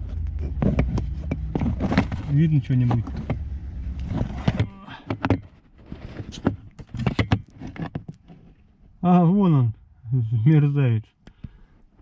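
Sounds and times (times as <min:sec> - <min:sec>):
low rumble: 0:00.0 - 0:04.5
handling clicks and knocks: 0:00.0 - 0:08.6.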